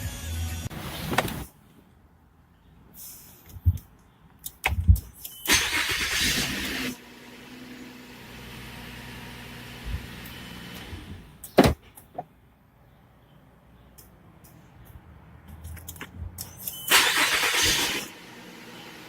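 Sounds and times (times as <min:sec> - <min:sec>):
car starter cranking: 0:05.4 - 0:07.0, 0:16.6 - 0:18.1.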